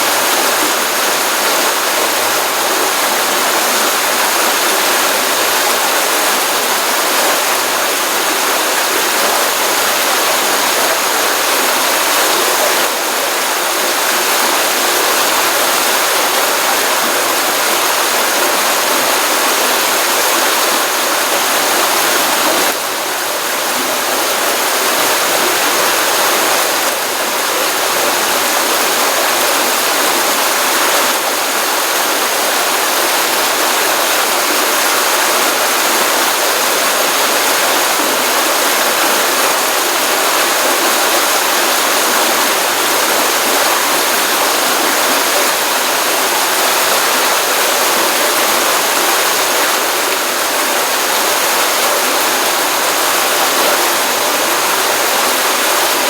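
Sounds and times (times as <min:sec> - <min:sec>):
stream water rushing: 0:00.0 - 0:56.0.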